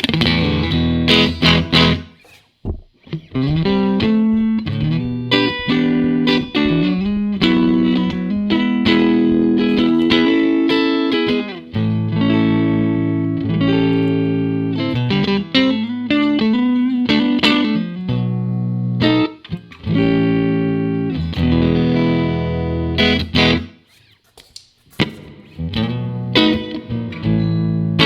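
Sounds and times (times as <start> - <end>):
electric guitar chords strummed: 3.0 - 23.6.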